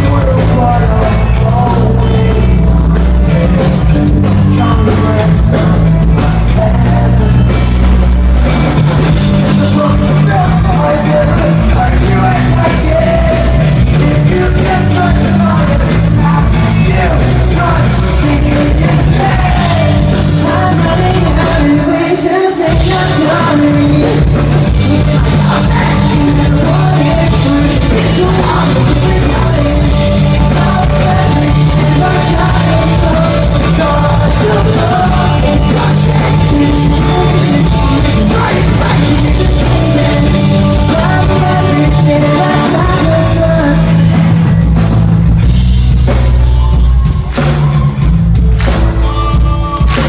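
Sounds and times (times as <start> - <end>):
pop-punk band playing live: 0.0 - 50.0
sung and shouted vocals: 9.5 - 44.1.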